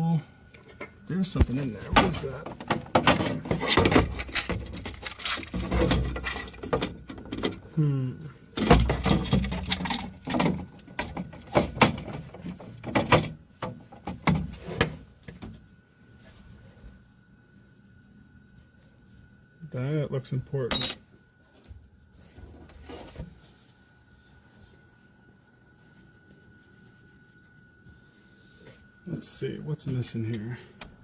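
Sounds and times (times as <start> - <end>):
faint high whine: 0.0 - 2.7, 3.3 - 11.2, 14.8 - 31.0
plastic parts clicking and rattling: 2.5 - 7.6, 8.6 - 13.4.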